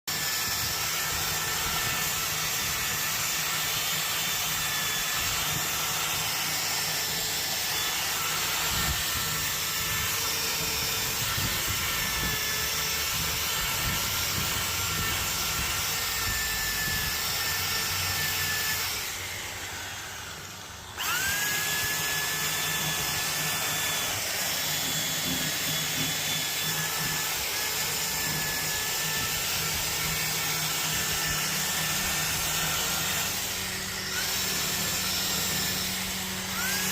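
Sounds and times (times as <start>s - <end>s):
power tool brush whining: 0.1s - 36.9s.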